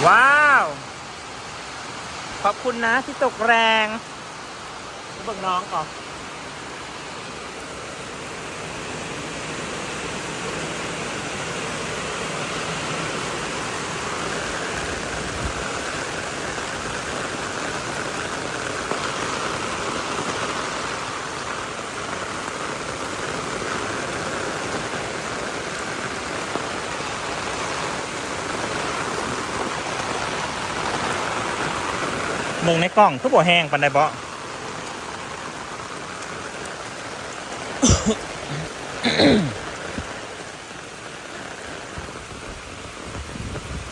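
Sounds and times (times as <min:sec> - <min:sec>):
heavy rain pouring: 0:00.0 - 0:43.9.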